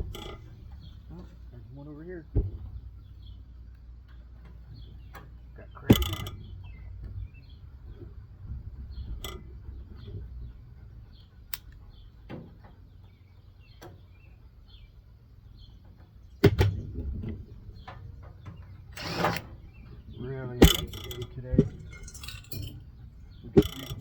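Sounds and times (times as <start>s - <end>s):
clicks and knocks of parts: 0.0s - 1.3s, 4.0s - 7.2s, 16.0s - 24.0s
scraping rattle: 0.0s - 3.4s, 4.4s - 12.0s, 15.6s - 24.0s
loud metal clank: 20.6s - 23.0s.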